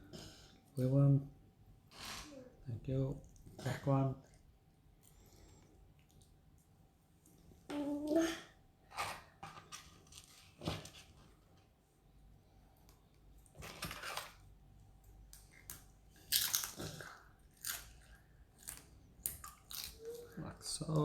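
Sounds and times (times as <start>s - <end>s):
potato chips crunching: 16.2s - 20.0s.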